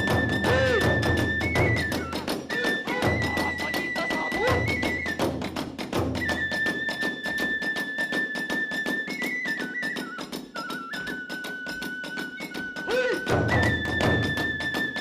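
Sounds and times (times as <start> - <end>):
drum strikes: 0.0 - 6.4
bamboo flute long notes: 0.0 - 15.0
small hand cymbals: 0.0 - 15.0.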